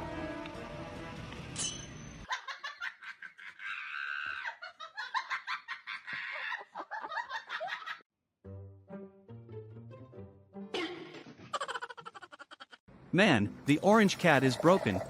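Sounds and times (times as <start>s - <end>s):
background music: 8.4s - 11.3s
high-pitched bubbling laughter: 11.6s - 12.8s.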